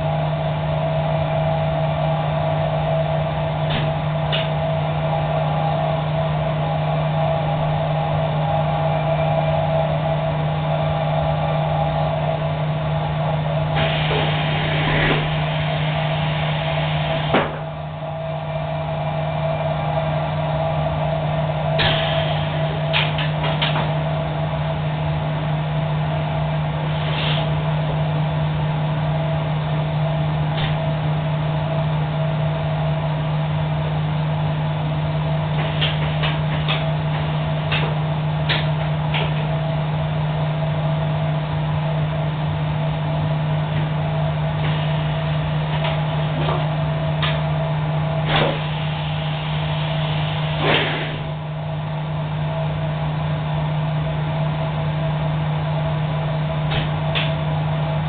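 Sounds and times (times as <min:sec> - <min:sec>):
welding machine electrical hum: 0:00.0 - 0:58.0
burst of hiss: 0:13.8 - 0:17.4, 0:48.3 - 0:51.3.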